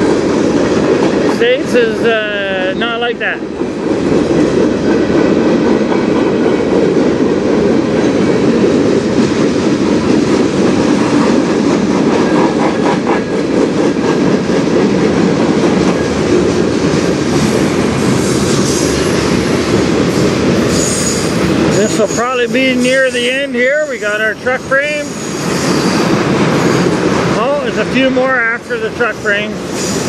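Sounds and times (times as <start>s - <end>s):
rumble of train wheels on rail: 0.0s - 30.0s
high wheel squeal: 20.7s - 27.0s.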